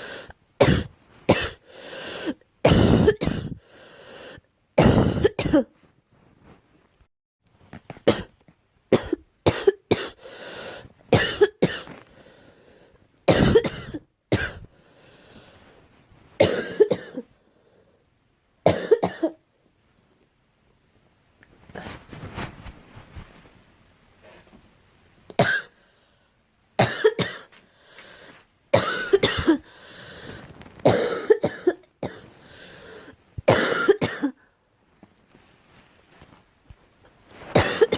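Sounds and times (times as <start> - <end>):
girl coughing: 0.6 - 1.6, 2.7 - 3.6, 4.8 - 5.7, 8.0 - 8.3, 8.9 - 10.2, 11.2 - 11.9, 13.3 - 14.6, 16.4 - 17.3, 18.7 - 19.4, 25.4 - 25.8, 26.8 - 27.5, 28.8 - 29.7, 30.8 - 32.3, 33.5 - 34.4, 37.5 - 37.9.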